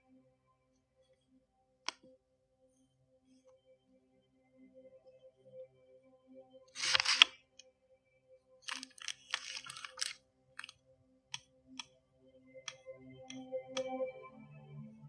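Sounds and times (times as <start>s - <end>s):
clicks and taps: 8.7s - 10.7s.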